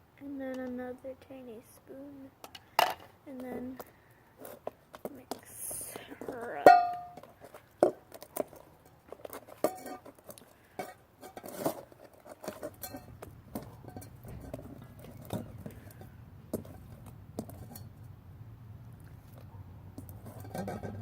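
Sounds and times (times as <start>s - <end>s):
spoon clinking against bowl: 6.7s - 7.2s.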